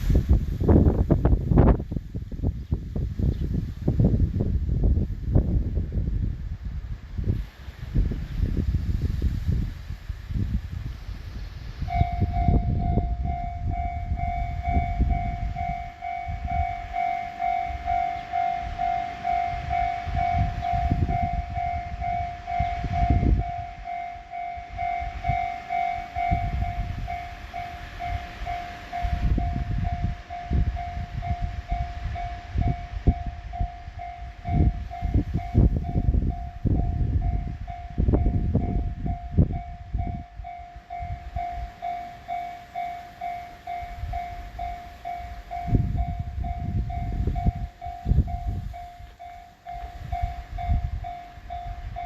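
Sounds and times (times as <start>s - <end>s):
uneven low rumble: 0.0s - 52.0s
higher repeating alarm tone: 11.9s - 52.0s
level crossing alarm dinging: 11.9s - 52.0s.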